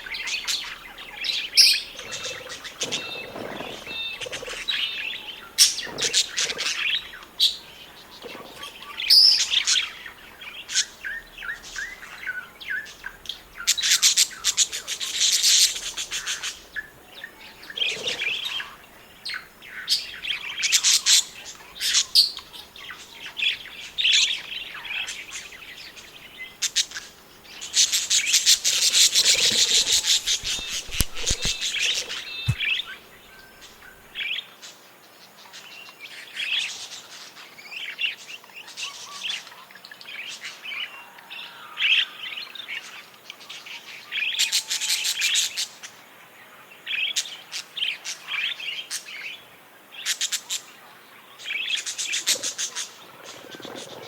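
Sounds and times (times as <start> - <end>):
budgerigars chirping and warbling: 0.0 - 34.4.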